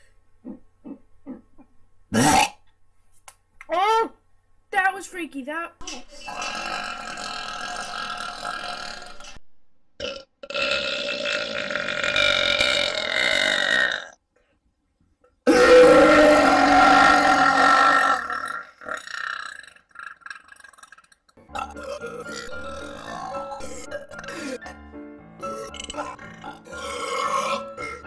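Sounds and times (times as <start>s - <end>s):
long drawn-out burps: 2.1s - 2.6s, 6.2s - 9.4s, 10.0s - 14.2s, 15.5s - 24.8s, 25.4s - 28.0s.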